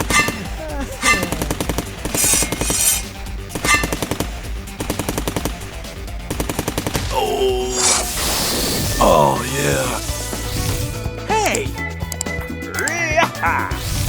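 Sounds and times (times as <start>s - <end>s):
rapid-fire gunshots: 0.0s - 11.1s
music track: 0.0s - 14.0s.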